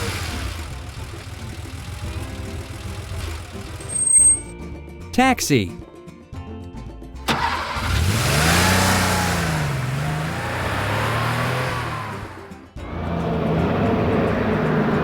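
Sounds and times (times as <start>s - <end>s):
steady engine sound: 0.0s - 3.9s
car engine revving: 0.0s - 4.3s, 7.3s - 15.0s.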